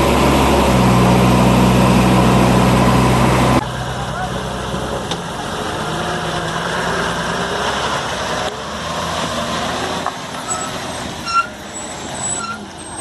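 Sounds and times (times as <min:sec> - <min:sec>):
heavy diesel engines running: 0:00.0 - 0:13.0
short high squeaks: 0:10.4 - 0:13.0.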